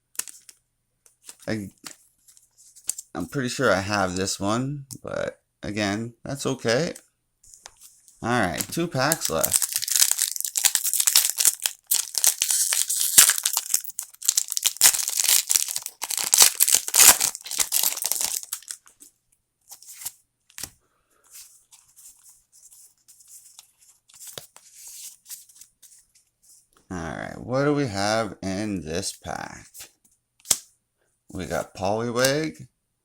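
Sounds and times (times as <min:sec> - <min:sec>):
cards rustling and clicking: 0:00.2 - 0:03.1, 0:06.9 - 0:19.1, 0:19.7 - 0:26.1, 0:29.7 - 0:30.7
foil wrapper tearing and crinkling: 0:09.0 - 0:18.8.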